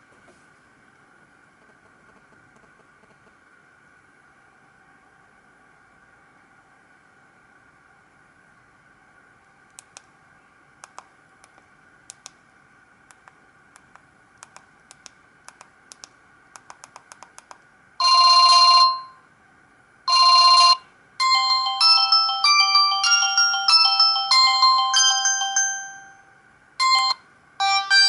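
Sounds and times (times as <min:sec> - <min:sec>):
beeping ringtone melody: 0:18.0 - 0:19.2, 0:20.1 - 0:28.0.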